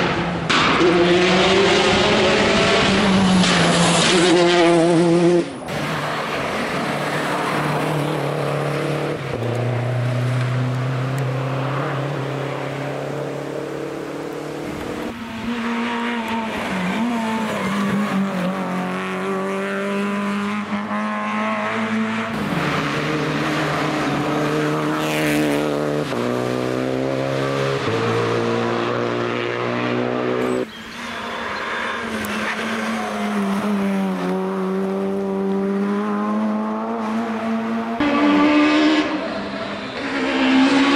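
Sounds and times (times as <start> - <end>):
rally car engines revving: 0.0 - 40.9.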